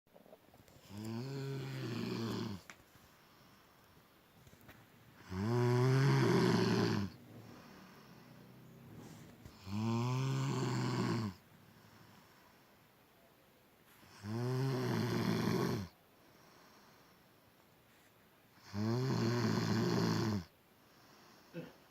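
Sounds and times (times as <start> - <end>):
quiet breathing: 0.2 - 21.9
person snoring heavily: 0.8 - 2.7, 5.2 - 12.4, 14.1 - 16.0, 18.6 - 20.5.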